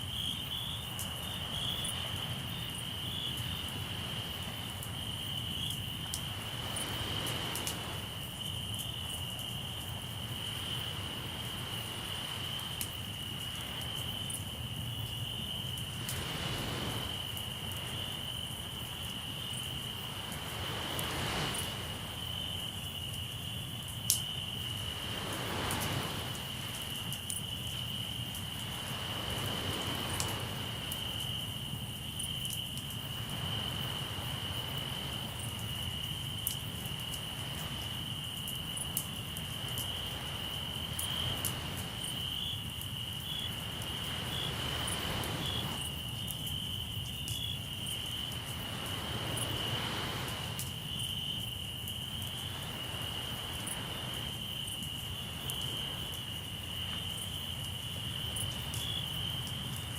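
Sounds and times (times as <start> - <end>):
crickets trilling: 0.0 - 59.9
sea surf washing: 1.1 - 5.2, 5.8 - 8.4, 10.1 - 14.2, 15.4 - 22.8, 24.4 - 31.7, 33.1 - 36.5, 37.1 - 42.7, 43.5 - 46.1, 47.9 - 51.0, 52.0 - 57.2.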